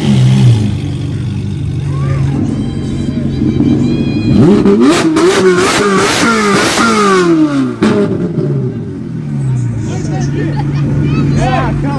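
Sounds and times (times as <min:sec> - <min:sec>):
engine revving: 0:00.0 - 0:09.4.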